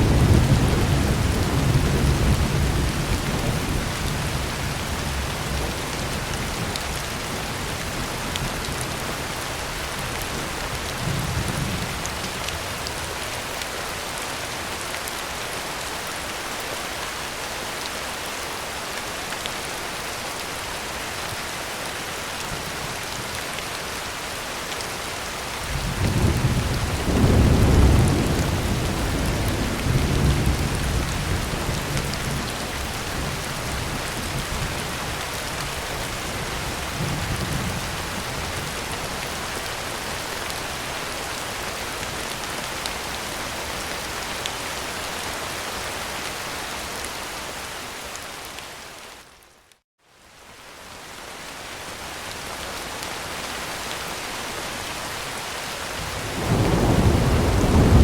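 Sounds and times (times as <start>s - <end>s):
thunder rumbling: 0.0s - 6.6s, 25.7s - 38.8s, 56.0s - 58.0s
rain on a tin roof: 0.0s - 58.0s.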